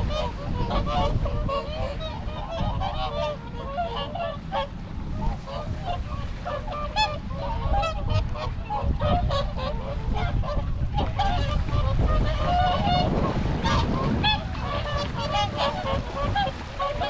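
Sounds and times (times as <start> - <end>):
swans honking: 0.0 - 17.0.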